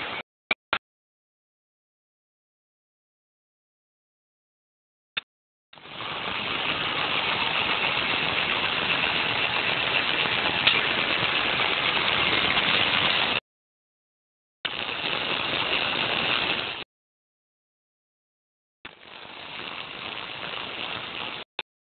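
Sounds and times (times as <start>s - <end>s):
machine axis mechanical whirr: 5.8s - 13.4s.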